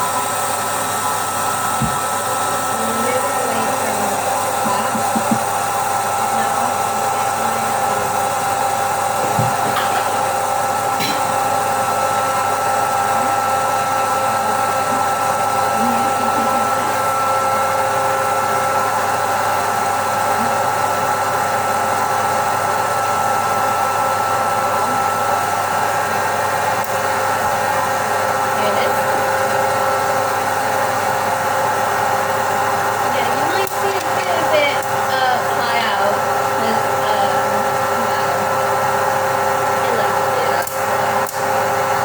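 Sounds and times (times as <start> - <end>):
popcorn machine blower whirring: 0.0 - 42.0.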